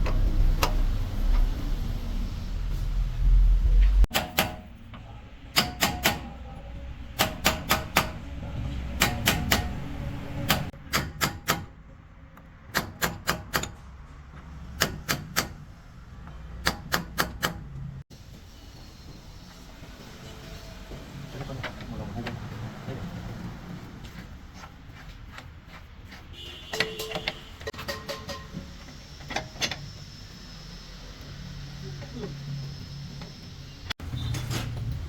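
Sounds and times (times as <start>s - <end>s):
low rumble: 0.0s - 4.1s
hammer striking metal: 4.1s - 4.8s, 5.5s - 6.4s, 7.2s - 8.3s, 9.0s - 11.8s, 26.8s - 28.6s.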